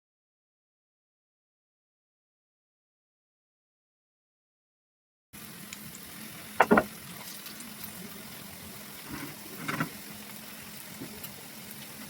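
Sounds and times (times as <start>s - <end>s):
steady hiss: 5.4s - 12.0s
clattering knocks: 6.6s - 6.9s.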